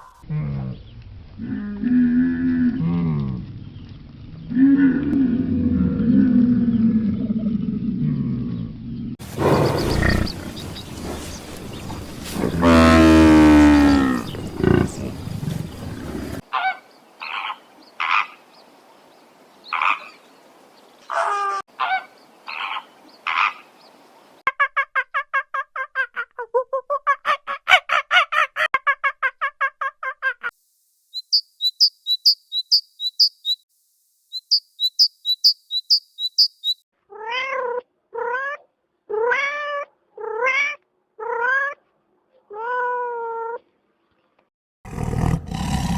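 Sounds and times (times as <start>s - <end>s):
fast even run of calls: 9.2s - 13.2s
long loud animal call: 12.4s - 18.3s.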